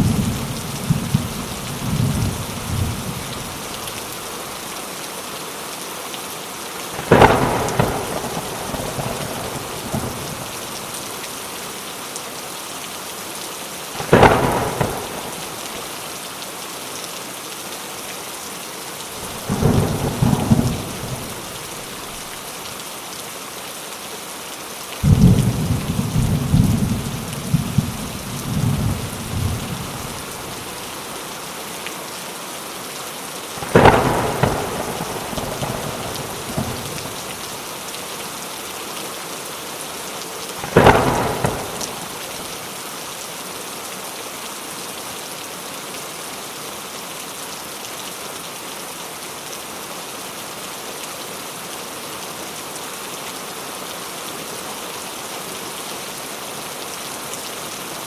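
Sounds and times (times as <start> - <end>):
thunder rumbling and cracking: 0.0 - 3.7, 7.0 - 10.7, 14.0 - 15.8, 19.2 - 22.3, 25.0 - 30.8, 33.6 - 37.6, 40.6 - 42.5
steady rain: 0.0 - 58.0.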